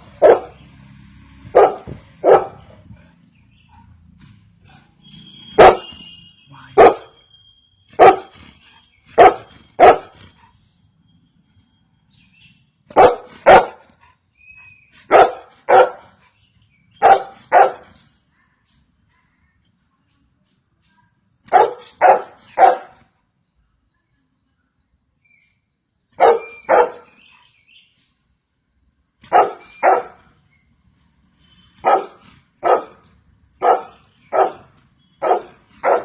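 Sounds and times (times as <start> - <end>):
dog barking: 0.1 - 0.6, 1.5 - 2.8, 5.5 - 6.0, 6.8 - 7.2, 8.0 - 8.3, 9.2 - 10.2, 12.9 - 13.9, 15.1 - 16.2, 17.0 - 17.9, 21.5 - 23.0, 26.2 - 27.2, 29.3 - 30.3, 31.8 - 33.0, 33.6 - 36.0.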